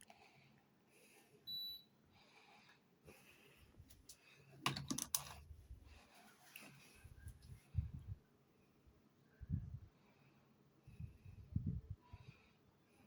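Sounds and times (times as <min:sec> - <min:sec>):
air conditioner beep: 0:01.4 - 0:02.0.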